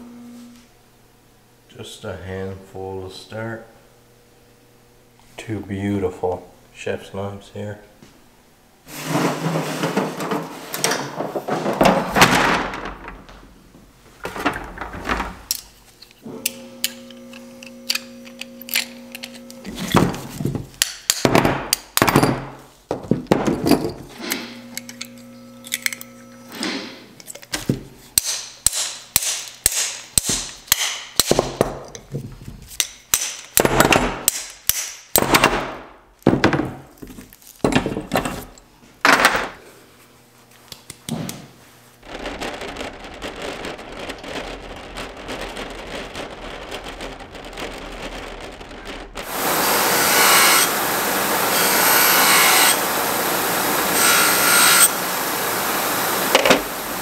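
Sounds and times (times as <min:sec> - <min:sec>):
power tool running: 0:49.2 - 0:57.0.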